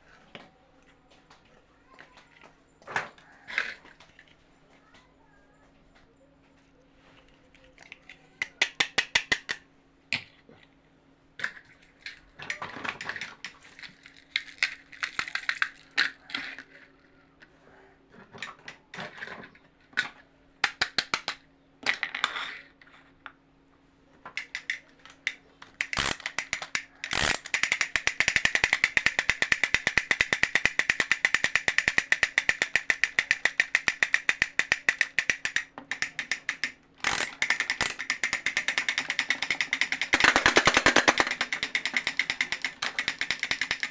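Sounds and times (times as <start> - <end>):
plastic toy ratchet clicking: 7.6 - 9.6, 11.4 - 16.6, 20.0 - 22.4, 24.3 - 43.9.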